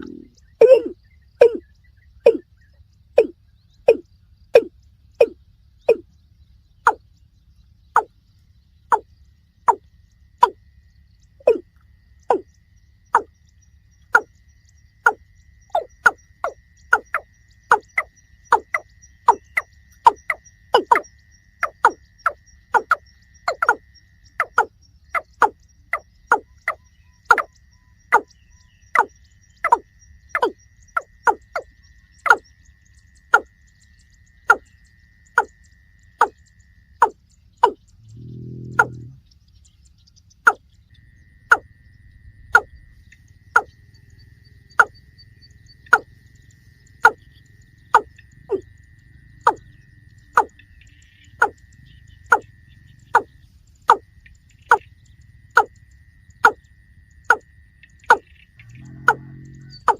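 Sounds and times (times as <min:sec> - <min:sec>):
faint steady high tone: 0:00.0 - 0:59.9
bird call notes dropping in pitch: 0:37.0 - 0:39.2, 0:58.1 - 0:59.9
brief low hum: 0:37.9 - 0:39.3, 0:58.6 - 0:59.9.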